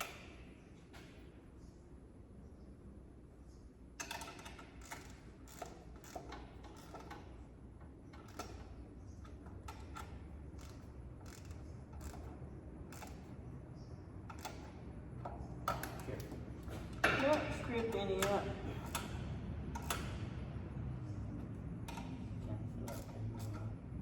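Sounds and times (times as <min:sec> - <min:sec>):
metallic clicks of hand tools: 0:18.2 - 0:20.2.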